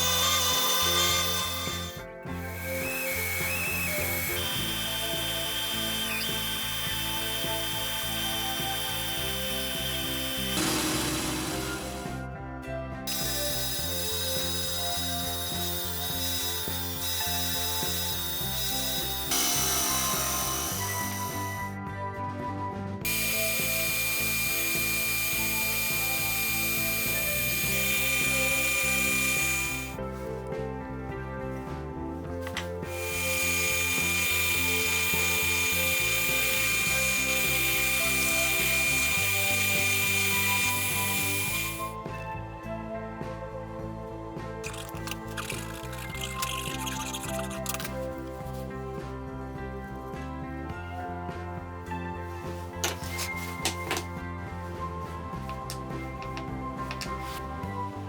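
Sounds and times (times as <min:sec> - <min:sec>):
power tool whining: 0:00.0 - 0:12.2, 0:13.1 - 0:21.8, 0:23.0 - 0:30.4, 0:32.4 - 0:42.1, 0:44.6 - 0:48.8, 0:52.7 - 0:54.1
background music with sustained chords: 0:00.0 - 0:58.0.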